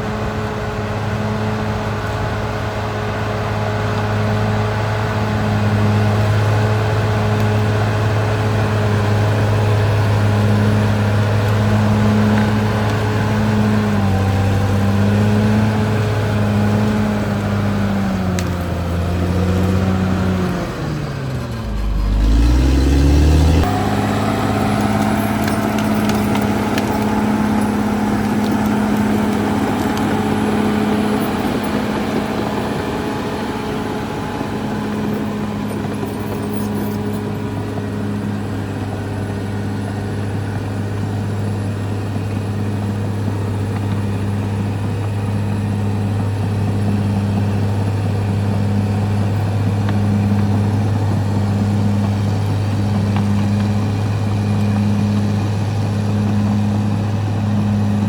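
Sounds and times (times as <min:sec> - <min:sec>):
bulldozer diesel engine drone: 0:00.0 - 0:58.0.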